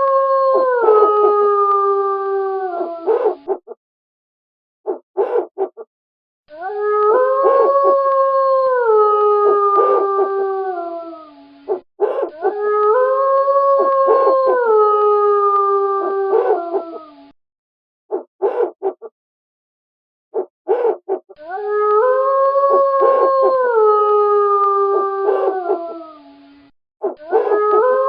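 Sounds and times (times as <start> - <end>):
wolf howling: 0.0 - 3.7, 6.5 - 17.3, 20.4 - 26.4, 27.0 - 28.0.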